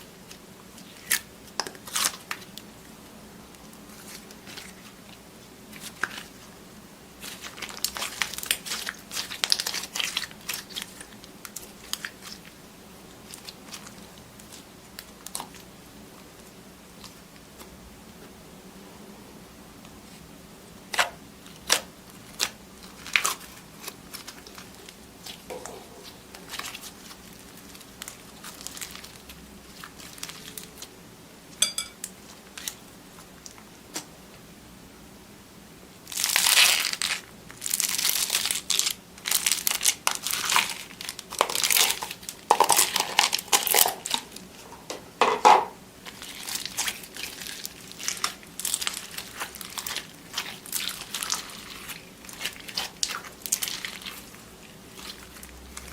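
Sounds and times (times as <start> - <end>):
crunchy slime being squeezed: 36.1 - 44.4, 46.0 - 55.9.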